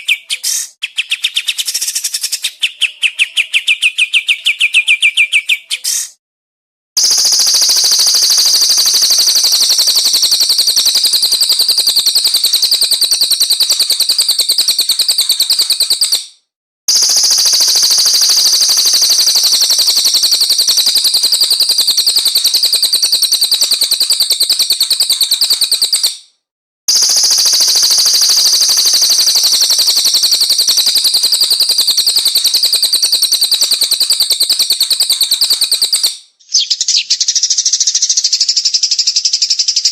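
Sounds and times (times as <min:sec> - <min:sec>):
bird high-pitched trill: 0:00.0 - 0:06.0, 0:07.0 - 0:16.2, 0:16.9 - 0:26.2, 0:26.9 - 0:39.9.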